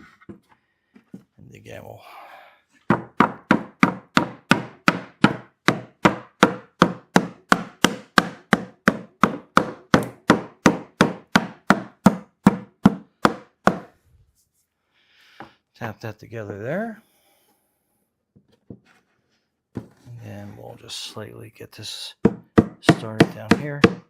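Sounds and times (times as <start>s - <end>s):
rubber mallet tapping wood: 2.9s - 13.9s, 22.2s - 24.0s.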